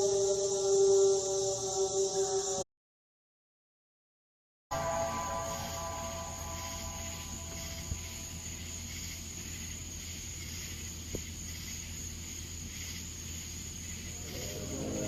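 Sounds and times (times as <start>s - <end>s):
insect chorus drone: 0.0s - 2.6s, 4.7s - 15.0s
low hum: 0.0s - 2.6s, 4.7s - 10.3s.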